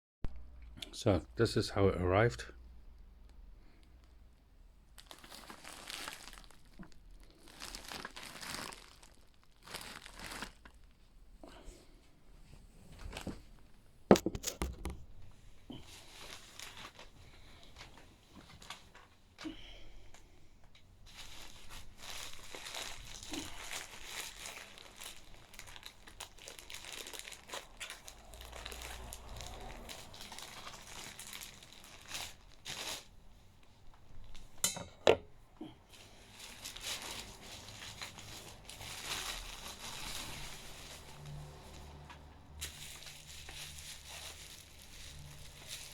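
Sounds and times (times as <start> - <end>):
wrapping crinkling and tearing: 4.8 - 11.1, 15.7 - 34.5, 35.9 - 45.9.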